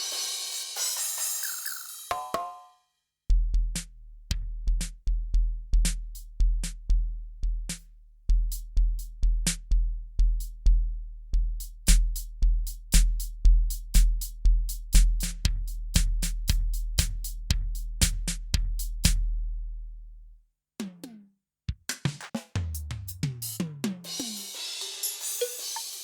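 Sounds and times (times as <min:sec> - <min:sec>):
sharp high drum hits: 0:00.0 - 0:02.7, 0:24.2 - 0:26.0
synthesizer kick drum: 0:03.3 - 0:19.3.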